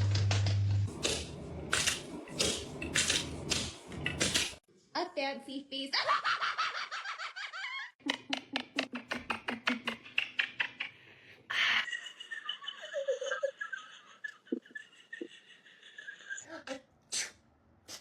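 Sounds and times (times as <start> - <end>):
person laughing: 6.0 - 11.0, 11.6 - 16.5.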